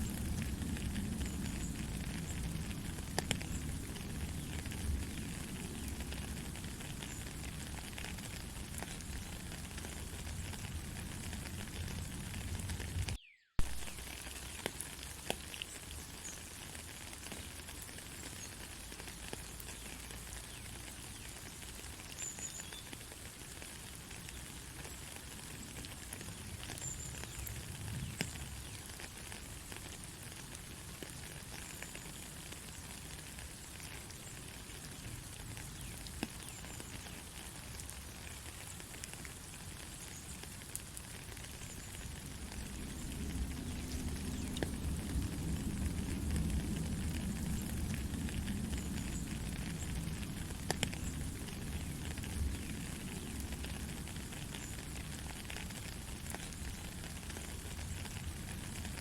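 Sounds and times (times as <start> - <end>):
steady rain: 0.0 - 59.0
rolling thunder rumble: 42.2 - 53.6.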